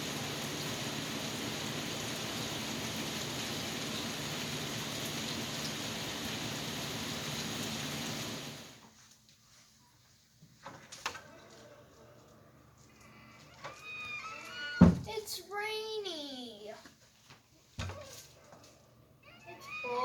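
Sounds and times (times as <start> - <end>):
steady rain: 0.0 - 8.8.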